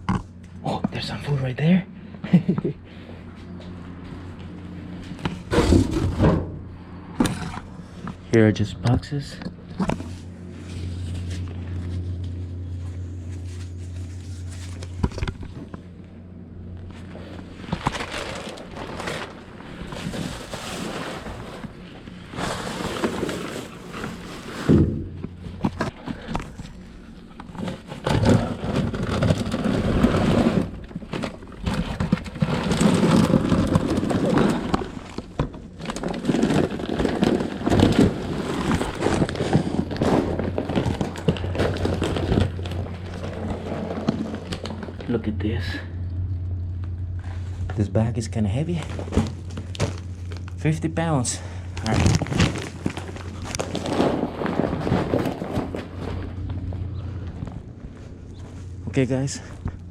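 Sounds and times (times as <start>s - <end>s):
steady low hum: 0.0s - 59.9s
rustling through cardboard and bags: 2.3s - 47.9s, 48.5s - 59.9s
knocks and thuds: 5.5s - 6.6s.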